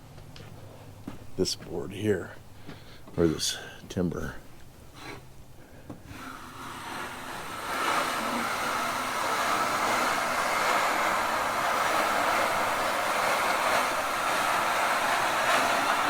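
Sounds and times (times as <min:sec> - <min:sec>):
bandsaw mill cutting log: 0:06.0 - 0:16.0.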